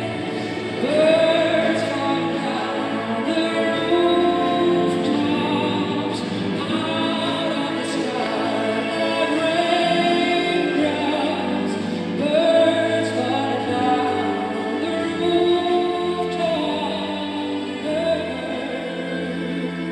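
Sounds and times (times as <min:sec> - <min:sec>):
backing vocals: 0:00.0 - 0:19.9.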